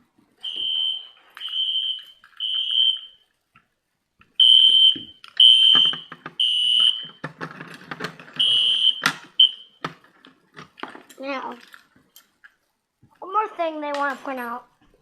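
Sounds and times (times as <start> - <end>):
fire alarm beeping: 0.4 - 3.3, 4.4 - 7.2, 8.4 - 9.8
clattering handling noises: 5.2 - 12.6.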